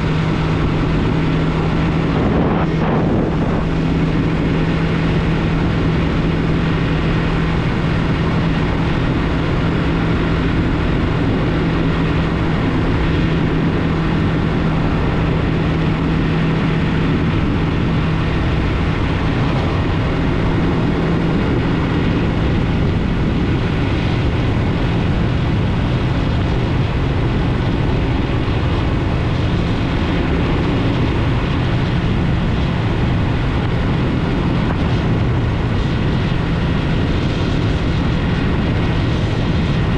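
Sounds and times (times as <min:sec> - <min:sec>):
motorcycle engine running: 0:00.0 - 0:39.9
road and wind noise: 0:00.0 - 0:39.9.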